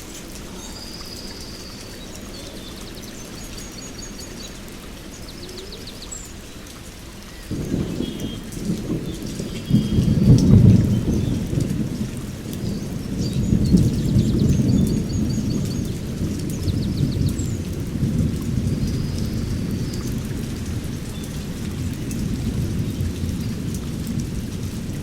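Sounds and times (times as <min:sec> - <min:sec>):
rain falling on foliage: 0:00.0 - 0:25.0
low rumble of thunder: 0:07.4 - 0:25.0.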